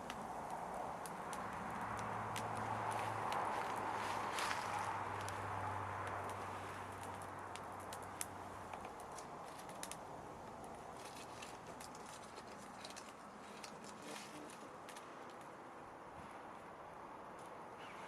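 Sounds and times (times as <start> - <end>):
campfire crackling and popping: 0.0 - 15.8.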